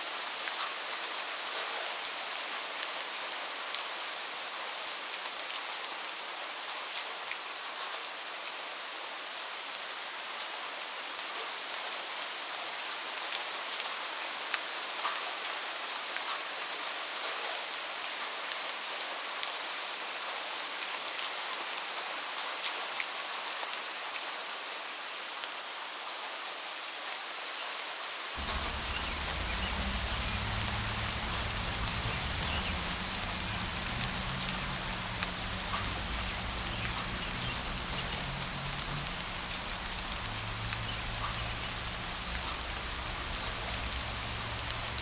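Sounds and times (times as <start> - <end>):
rain hiss: 0.0 - 45.0
raindrops ticking on surface: 28.4 - 45.0.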